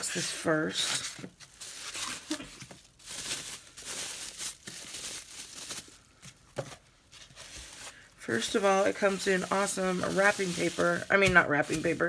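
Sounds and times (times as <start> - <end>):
packaging wrapping crinkling: 0.9 - 12.0.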